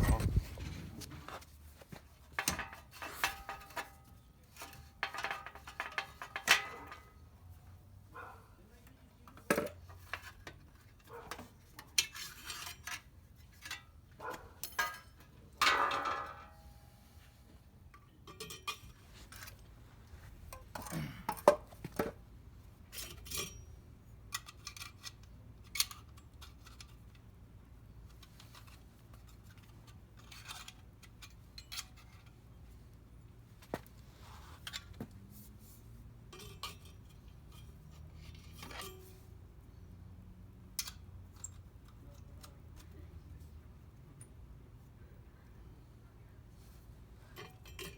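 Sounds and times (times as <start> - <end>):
metallic clinks of tools and parts: 14.6 - 16.5, 17.9 - 19.7, 22.9 - 27.0, 36.3 - 39.3, 40.7 - 43.0, 47.3 - 47.9.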